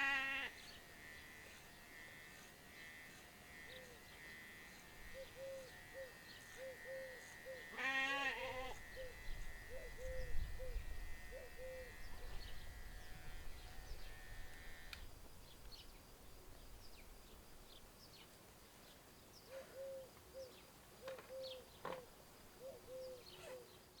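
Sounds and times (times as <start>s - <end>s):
bird hooting calls: 5.1s - 7.8s, 8.4s - 12.4s, 19.5s - 22.0s, 22.6s - 23.8s.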